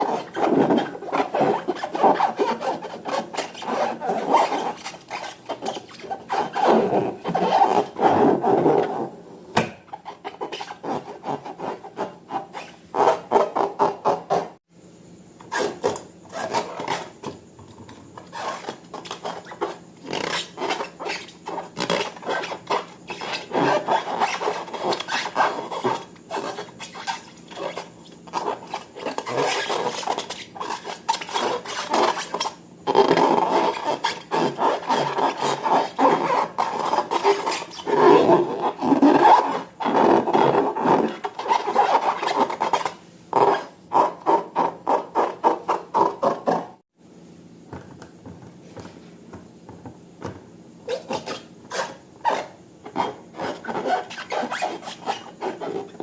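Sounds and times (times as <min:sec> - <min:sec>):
slime and balloons rubbing and crackling: 0:00.0 - 0:09.2, 0:18.2 - 0:46.8, 0:50.9 - 0:56.0.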